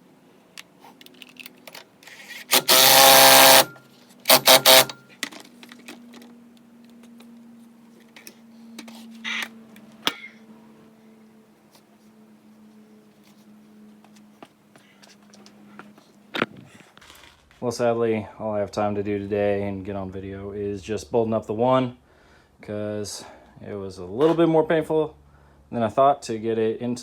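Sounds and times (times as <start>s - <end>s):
power tool driving bolts: 1.1s - 5.9s.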